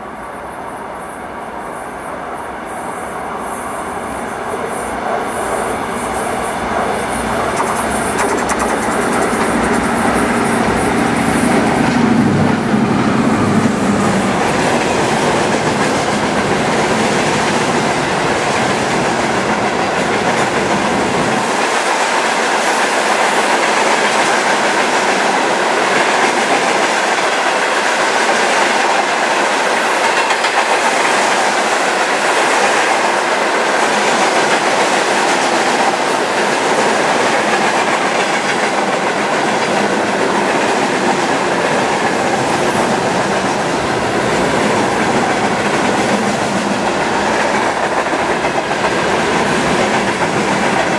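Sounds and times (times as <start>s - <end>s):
train wheels clattering over rail joints: 5.5s - 12.0s.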